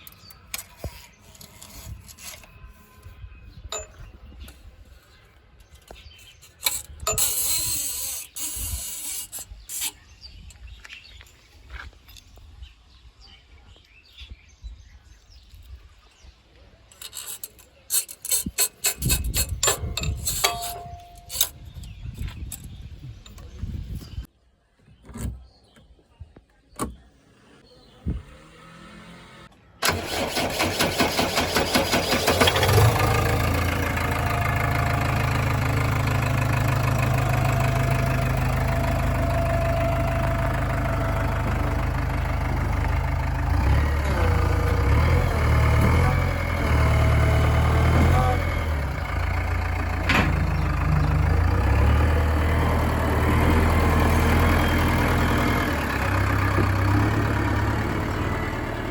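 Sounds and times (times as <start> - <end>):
diesel engine cranking and running: 5.7 - 10.4, 16.8 - 23.7, 28.7 - 58.9.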